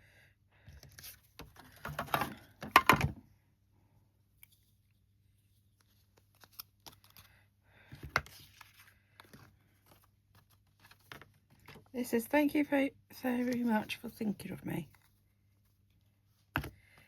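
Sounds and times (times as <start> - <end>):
paper rustling: 5.5 - 11.9.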